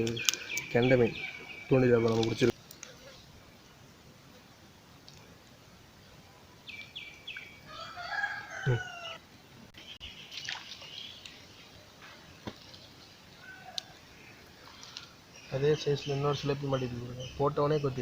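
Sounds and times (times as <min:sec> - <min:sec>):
rooster crowing: 0:07.6 - 0:09.2, 0:13.4 - 0:14.0.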